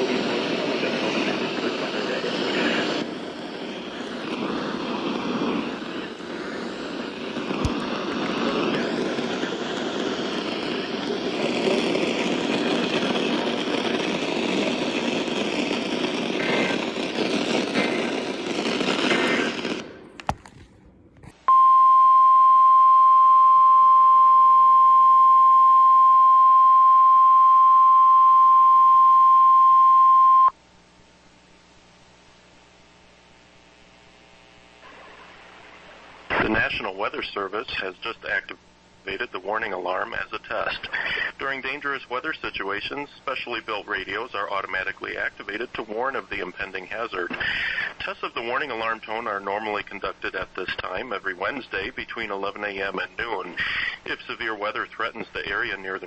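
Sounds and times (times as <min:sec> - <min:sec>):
loud hiss-like noise: 0:00.0 - 0:21.5, 0:30.5 - 0:56.0
weather radio alarm tone: 0:21.5 - 0:30.5.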